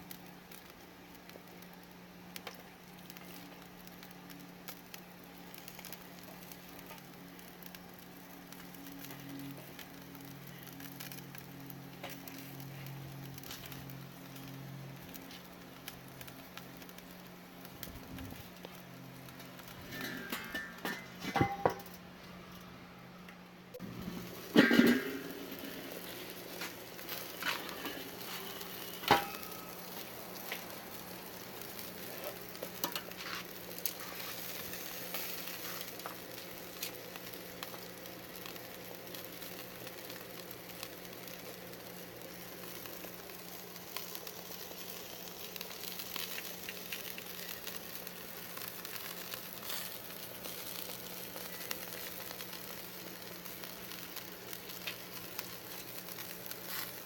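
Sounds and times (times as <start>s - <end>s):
meat sizzling on a grill: 0.0s - 21.9s, 23.8s - 57.0s.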